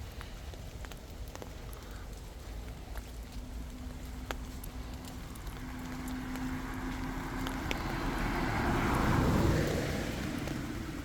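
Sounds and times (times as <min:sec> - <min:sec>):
light rain pattering: 0:00.0 - 0:11.0
vehicle passing: 0:03.3 - 0:11.0.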